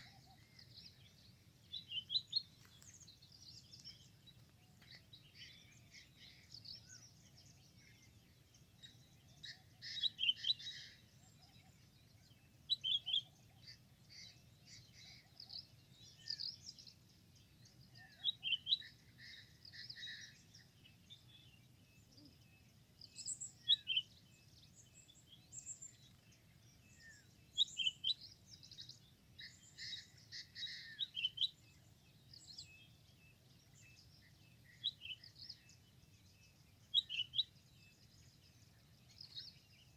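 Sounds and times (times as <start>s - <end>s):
birds chirping and singing: 0.0s - 39.9s.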